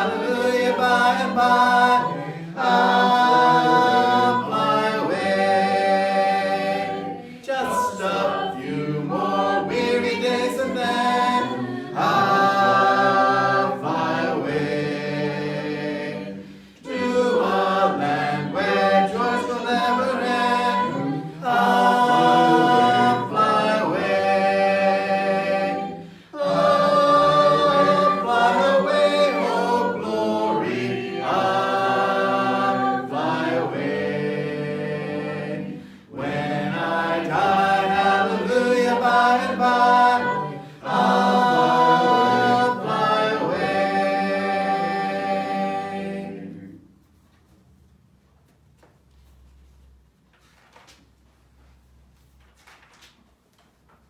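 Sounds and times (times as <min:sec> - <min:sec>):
congregation singing a hymn: 0:00.0 - 0:47.2
singers breathing: 0:16.4 - 0:16.8, 0:26.0 - 0:26.4, 0:35.8 - 0:36.2.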